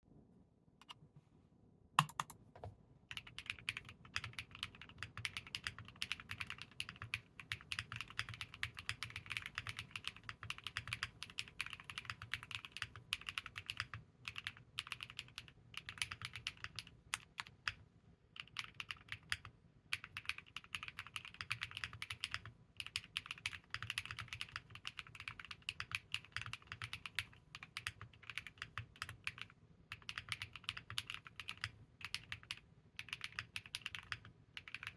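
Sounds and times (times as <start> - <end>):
sharp click: 2.0 - 2.7
mechanical keyboard typing: 2.0 - 17.8, 18.4 - 34.9.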